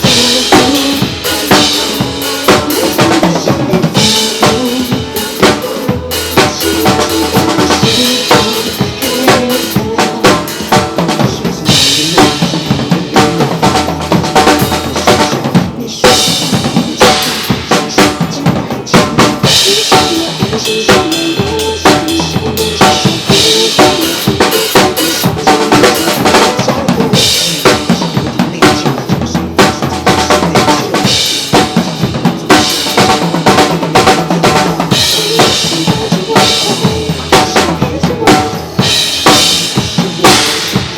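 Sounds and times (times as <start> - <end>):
drum kit beat: 0.0 - 40.9
recorded pop song: 0.0 - 40.9.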